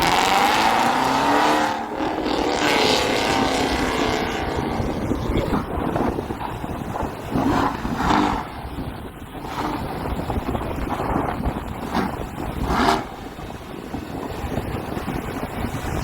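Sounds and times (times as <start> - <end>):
vehicle noise: 0.0 - 16.0
wind buffeting microphone: 0.0 - 16.0.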